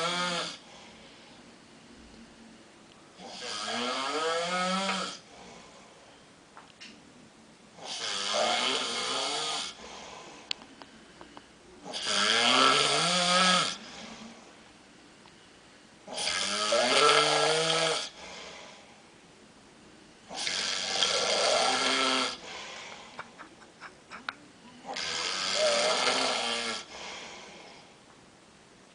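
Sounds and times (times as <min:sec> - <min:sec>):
man snoring loudly: 0:00.0 - 0:00.6, 0:03.2 - 0:05.2, 0:07.8 - 0:09.8, 0:11.8 - 0:13.9, 0:16.1 - 0:18.2, 0:20.3 - 0:22.4, 0:24.9 - 0:27.0.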